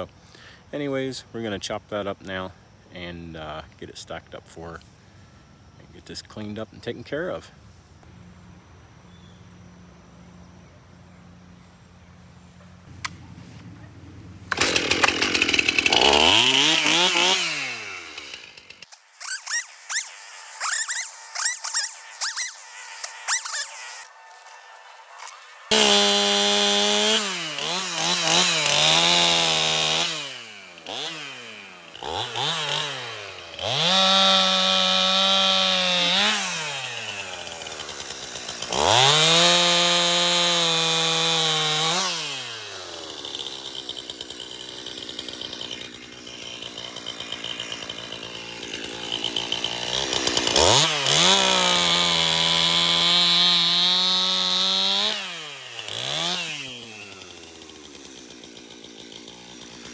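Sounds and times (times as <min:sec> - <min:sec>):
chainsaw cutting wood: 0:14.3 - 0:59.9.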